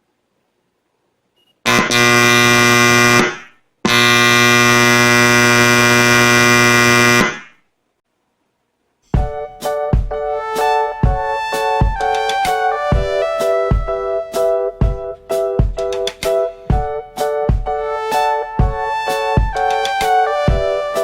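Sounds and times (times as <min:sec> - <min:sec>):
amplifier buzzing hum: 0:00.0 - 0:09.3.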